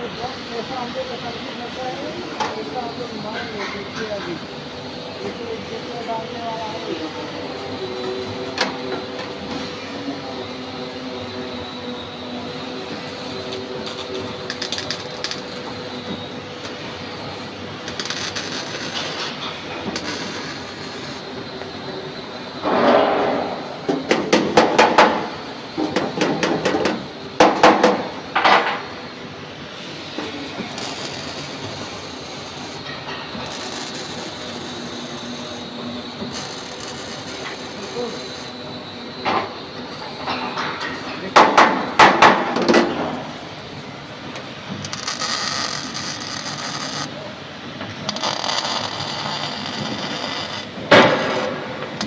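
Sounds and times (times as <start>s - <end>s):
hammer striking metal: 22.6s - 25.3s
metal scraping and clattering: 22.6s - 26.2s
hammer blows: 22.6s - 28.9s.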